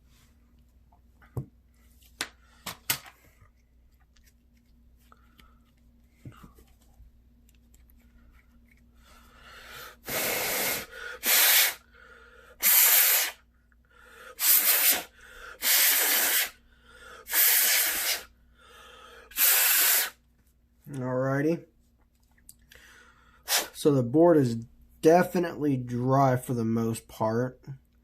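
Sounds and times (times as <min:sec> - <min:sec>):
short hissing spray blasts: 0:10.0 - 0:11.8, 0:12.6 - 0:13.4, 0:14.4 - 0:16.6, 0:17.3 - 0:18.3, 0:19.4 - 0:20.2, 0:23.5 - 0:23.8.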